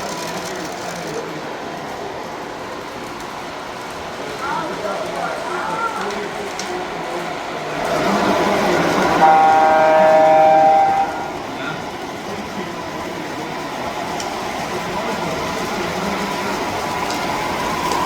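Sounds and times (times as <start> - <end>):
steady background noise: 0.0 - 18.0
train horn blast: 9.0 - 11.6.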